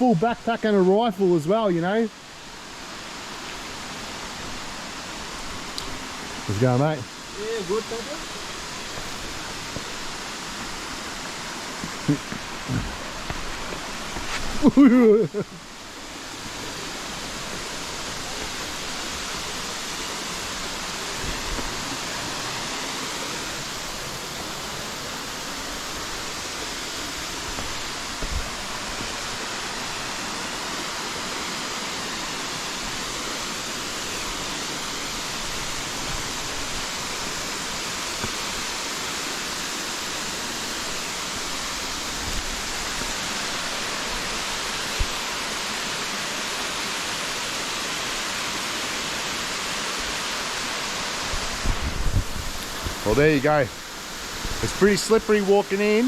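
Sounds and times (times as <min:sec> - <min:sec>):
waterfall rushing: 0:00.0 - 0:56.0.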